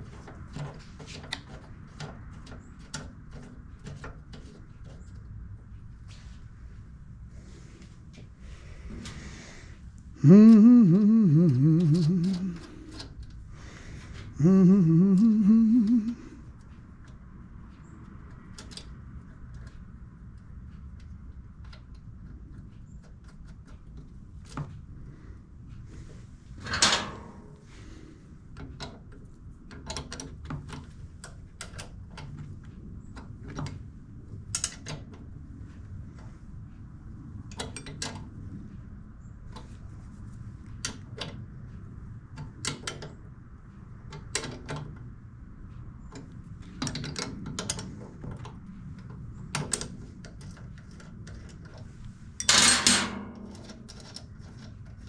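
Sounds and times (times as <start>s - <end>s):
low steady hum: 6.6s - 16.9s.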